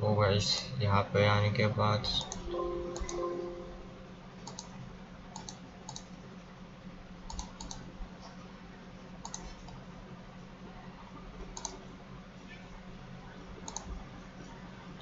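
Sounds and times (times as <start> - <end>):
low steady hum: 0.0 - 15.0
computer mouse clicking: 4.4 - 6.1, 7.3 - 7.9, 9.2 - 9.8, 11.4 - 11.8, 13.6 - 14.0.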